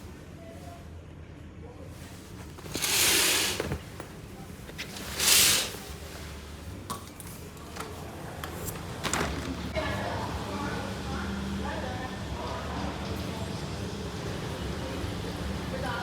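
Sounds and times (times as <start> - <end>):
curtain swishing along rail: 2.0 - 6.7.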